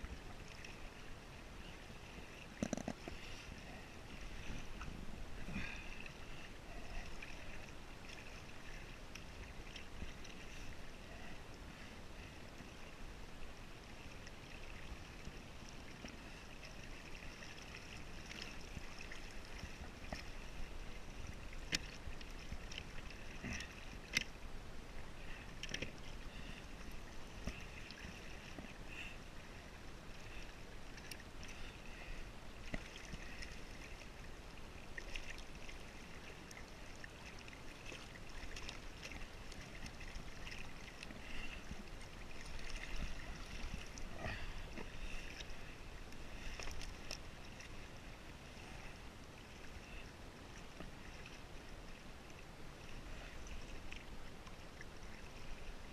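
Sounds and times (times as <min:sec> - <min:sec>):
small waves lapping against hull: 0:00.0 - 0:55.9.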